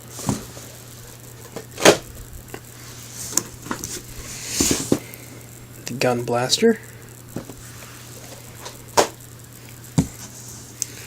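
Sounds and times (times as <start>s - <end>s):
cardboard rustling slide: 0.0s - 0.9s, 2.8s - 5.1s, 7.4s - 9.1s, 10.0s - 10.8s
low electrical hum: 0.0s - 11.0s
cardboard boxes tapping and knocking: 10.0s - 10.3s.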